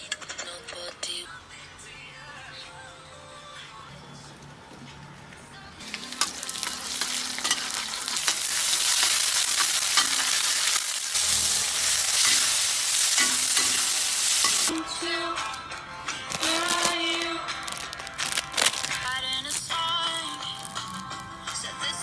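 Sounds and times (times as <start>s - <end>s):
food sizzling in hot oil: 5.8s - 14.7s.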